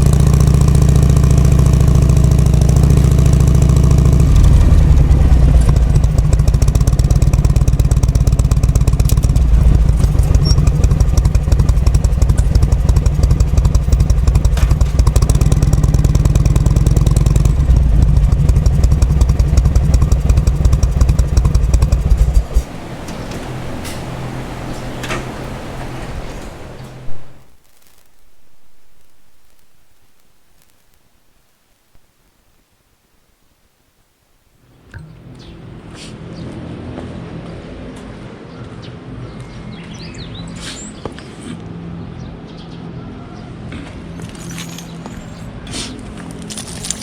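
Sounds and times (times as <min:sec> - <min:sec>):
motorcycle engine running: 0:00.0 - 0:27.6.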